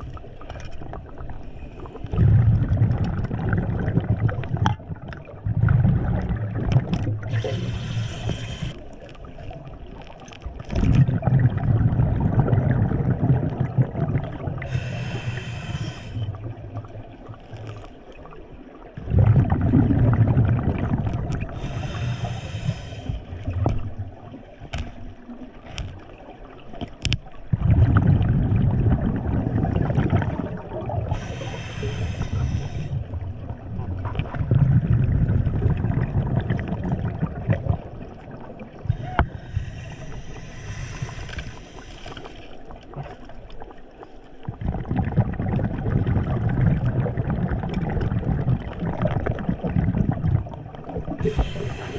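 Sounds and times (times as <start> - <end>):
gurgling exhaled bubbles: 0.0 - 51.9
hissing regulator inhales: 7.2 - 9.0, 14.6 - 16.5, 21.5 - 23.4, 31.1 - 33.0, 38.9 - 42.6, 51.2 - 51.9.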